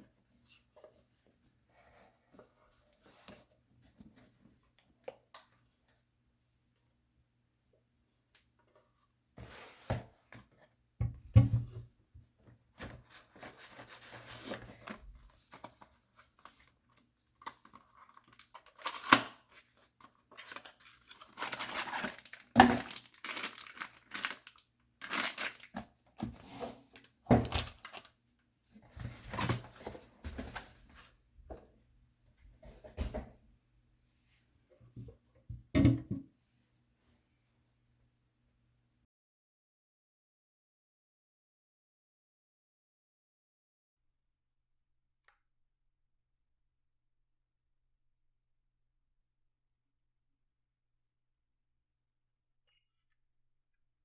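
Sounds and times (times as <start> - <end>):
wrapping tearing and crinkling: 17.7 - 19.6, 20.3 - 25.8, 27.4 - 28.1.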